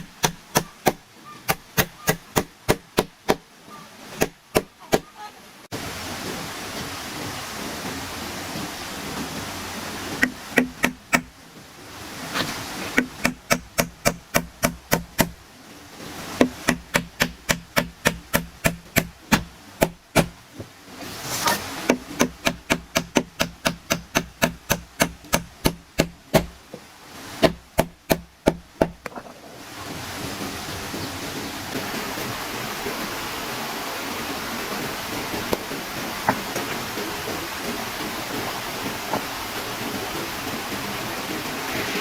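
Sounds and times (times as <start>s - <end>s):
rapid sharp knocks: 0.0s - 3.5s, 4.2s - 5.1s, 10.2s - 11.3s, 13.0s - 15.4s, 16.4s - 20.4s, 21.9s - 26.6s, 27.4s - 29.1s.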